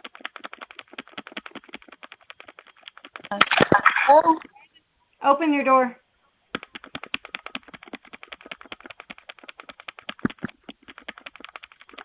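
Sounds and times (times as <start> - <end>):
rapid tapping on a door: 0.0 - 3.3, 6.5 - 12.0.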